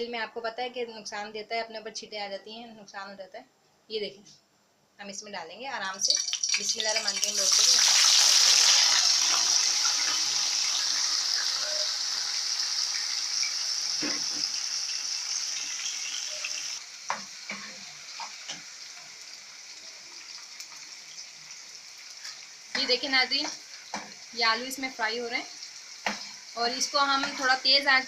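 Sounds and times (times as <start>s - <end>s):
potatoes sizzling in deep oil: 5.8s - 28.0s.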